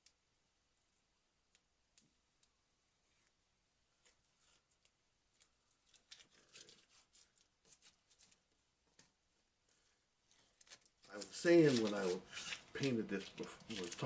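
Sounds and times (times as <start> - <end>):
masking tape peeling: 10.3 - 14.0.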